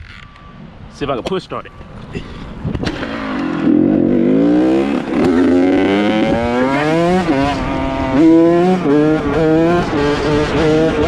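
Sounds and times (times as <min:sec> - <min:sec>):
dirt bike engine revving: 0:02.8 - 0:11.0.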